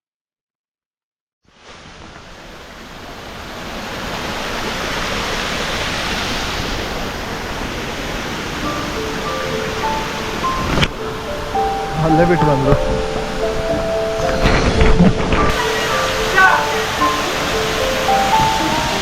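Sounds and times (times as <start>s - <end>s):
waterfall roaring: 1.5s - 19.0s
music notes: 8.3s - 19.0s.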